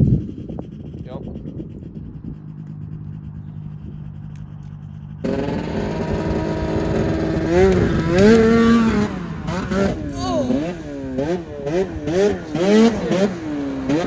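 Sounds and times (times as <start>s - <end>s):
snowmobile engine revving: 8.3s - 14.0s.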